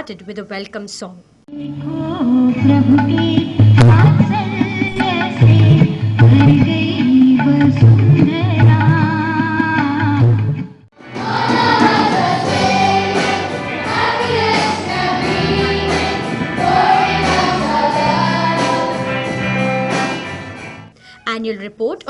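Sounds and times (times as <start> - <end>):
music with drum beat: 2.8 - 20.7
choir singing with accompaniment: 11.0 - 20.6.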